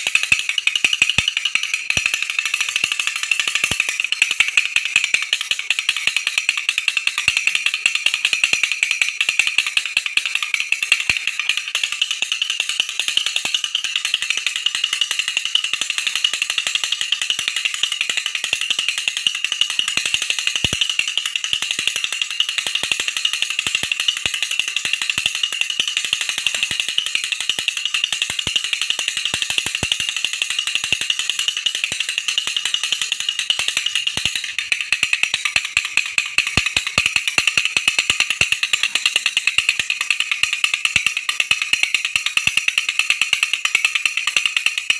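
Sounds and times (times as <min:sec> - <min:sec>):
baby rattle clicking: 0:17.2 - 0:44.9.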